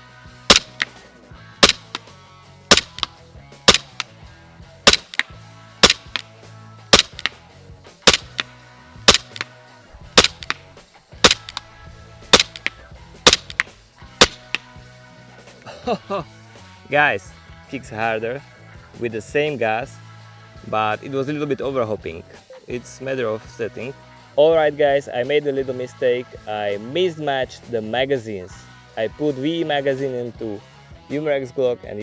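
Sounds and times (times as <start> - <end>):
airsoft pistol shots: 0.5 - 0.9, 1.6 - 2.0, 2.7 - 3.1, 3.7 - 4.0, 4.9 - 6.2, 7.0 - 7.4, 8.1 - 8.4, 9.1 - 9.5, 10.2 - 10.6, 11.2 - 11.6, 12.3 - 14.6.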